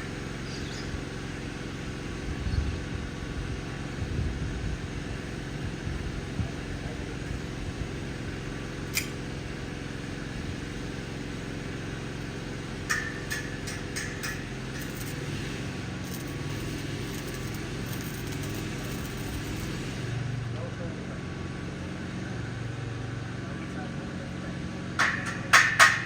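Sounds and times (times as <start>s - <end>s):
engine running steadily: 0.0s - 26.0s.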